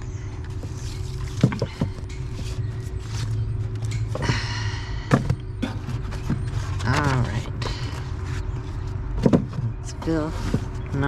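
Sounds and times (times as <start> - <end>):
low steady hum: 0.0 - 11.0
books knocking when handled: 1.3 - 2.0, 9.2 - 9.7.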